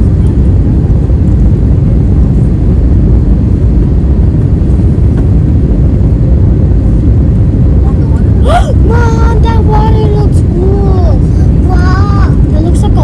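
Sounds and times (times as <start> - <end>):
airliner cabin engine rumble: 0.0 - 13.0
faint steady hum: 0.0 - 13.0.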